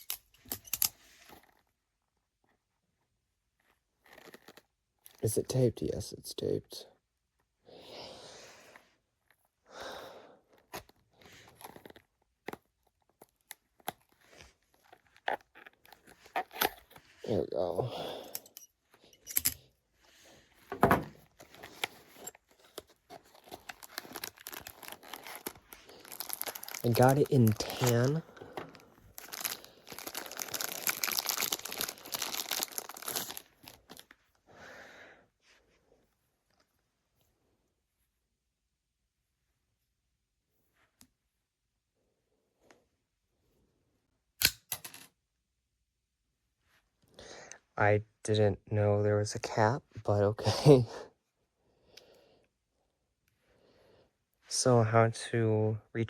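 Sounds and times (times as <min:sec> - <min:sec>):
packaging crinkling and tearing: 0:21.4 - 0:34.2
soft rustle: 0:39.2 - 0:41.5.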